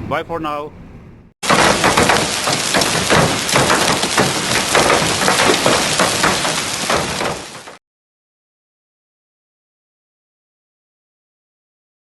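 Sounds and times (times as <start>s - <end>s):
heavy rain pelting hard surface: 1.4s - 7.8s.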